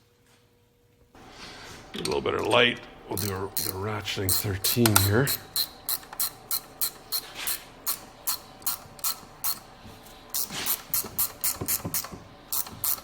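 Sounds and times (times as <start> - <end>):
ratcheting wrench clicking: 3.1 - 9.7, 10.3 - 13.0
wrench scrape: 3.1 - 9.7, 10.3 - 13.0.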